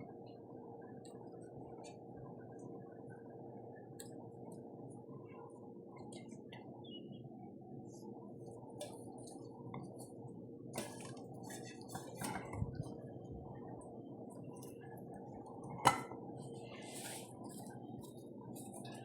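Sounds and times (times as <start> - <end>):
steady low hum: 0.0 - 19.0
dishes and utensils clinking: 15.6 - 16.2.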